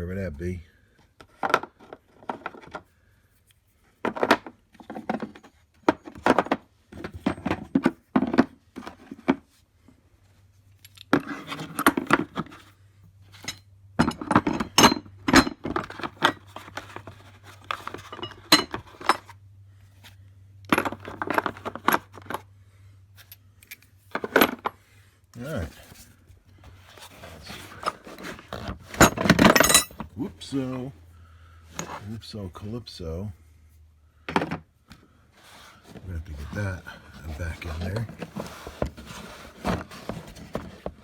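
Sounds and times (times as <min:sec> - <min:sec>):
metal tools clinking: 0:29.0 - 0:30.1.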